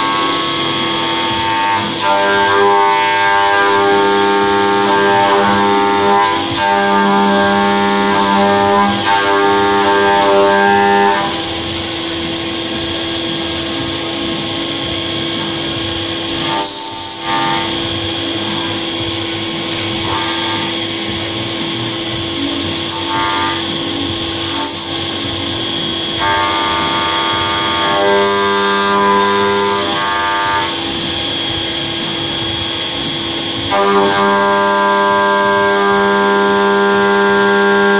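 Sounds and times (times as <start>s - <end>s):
machine tool whine: 0.0s - 37.9s
organ-like music chords: 17.4s - 28.3s.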